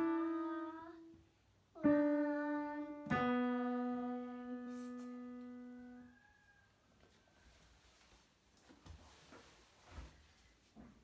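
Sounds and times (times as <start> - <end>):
piano notes: 0.0 - 1.1, 1.8 - 6.1.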